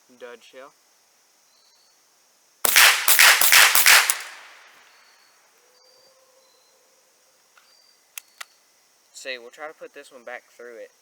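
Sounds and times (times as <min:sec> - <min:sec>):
rifle shots cracking: 0:02.7 - 0:04.8.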